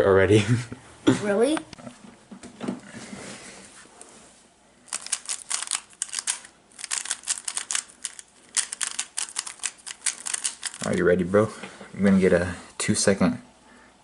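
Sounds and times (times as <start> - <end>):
plastic puzzle cube clicking: 4.9 - 10.8.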